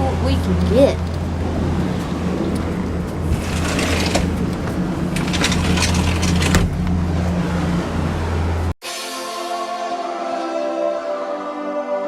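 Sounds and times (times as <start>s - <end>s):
car engine and road noise: 0.0s - 8.8s.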